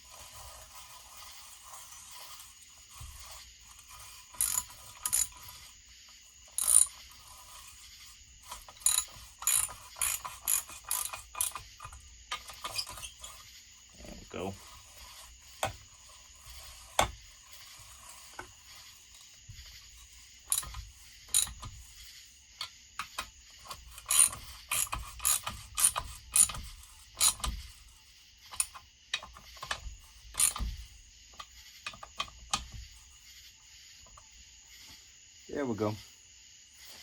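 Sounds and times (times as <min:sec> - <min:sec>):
hand ratchet clicking: 0:03.7 - 0:05.6, 0:06.5 - 0:07.4, 0:08.4 - 0:13.3, 0:20.5 - 0:21.7, 0:22.6 - 0:27.6, 0:28.5 - 0:30.7.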